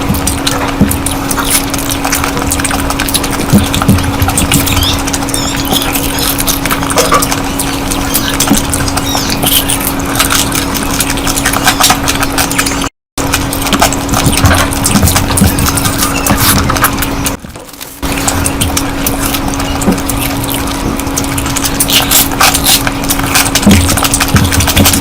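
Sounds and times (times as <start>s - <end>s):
wet mouth chewing clicks: 0.0s - 17.4s, 18.0s - 25.0s
steady low hum: 0.0s - 25.0s.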